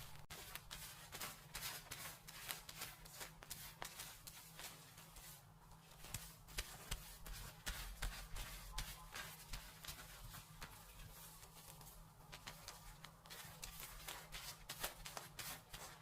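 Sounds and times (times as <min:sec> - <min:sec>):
hands scrubbing hair: 0:00.3 - 0:16.0.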